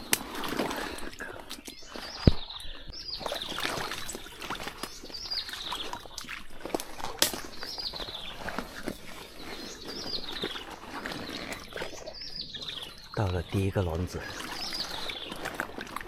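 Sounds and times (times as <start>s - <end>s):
bird calling: 7.3s - 16.0s.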